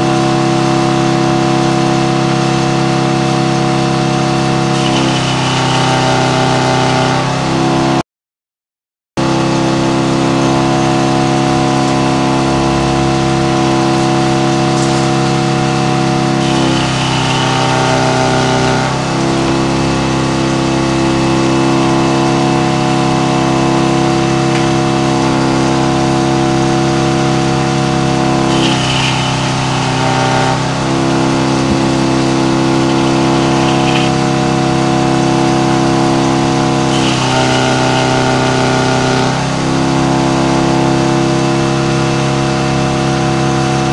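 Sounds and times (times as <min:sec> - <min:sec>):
sawmill engine running: 0:00.0 - 0:08.0, 0:09.2 - 0:43.9
higher whine: 0:09.2 - 0:36.9.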